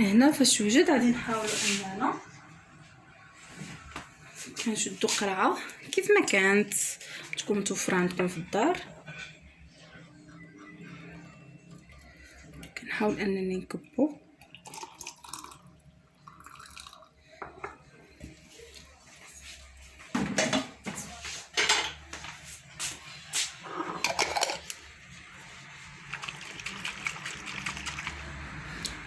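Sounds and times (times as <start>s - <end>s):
liquid trickling: 14.4s - 17.1s, 25.9s - 28.6s.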